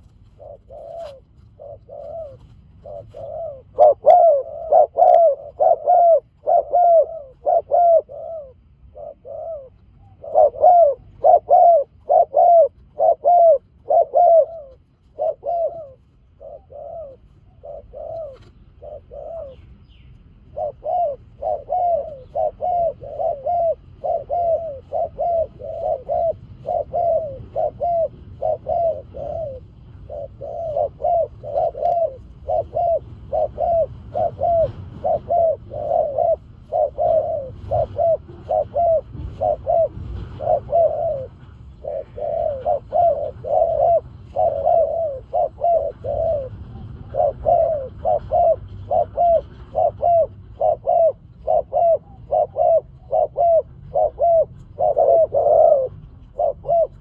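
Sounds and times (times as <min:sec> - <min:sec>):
doves cooing: 0:00.0 - 0:57.0.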